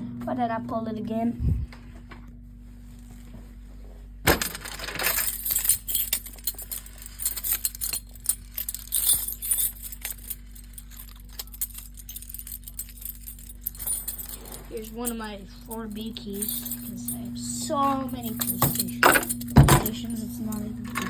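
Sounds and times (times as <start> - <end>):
keys jangling: 4.5 - 21.0.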